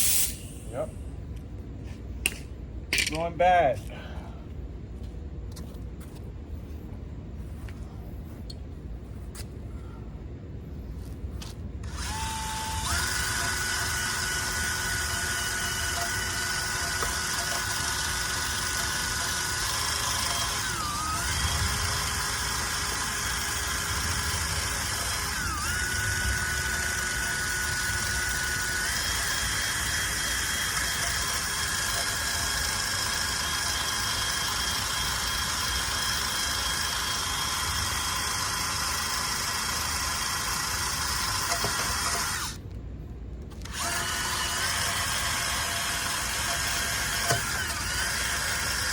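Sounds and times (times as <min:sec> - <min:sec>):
small electric motor whining: 0:11.0 - 0:42.6, 0:43.5 - 0:48.9.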